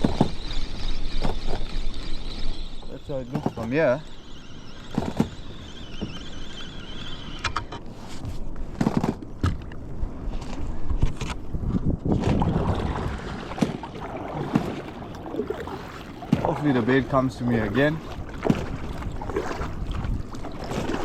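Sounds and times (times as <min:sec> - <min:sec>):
knocks and splashes: 0:00.0 - 0:00.4, 0:12.0 - 0:21.0
water slapping against kayak hull: 0:00.0 - 0:01.8, 0:10.5 - 0:21.0.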